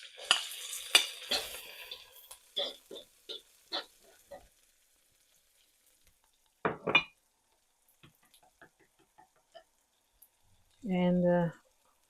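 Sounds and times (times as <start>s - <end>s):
spatula scraping frying pan: 0.0s - 4.5s.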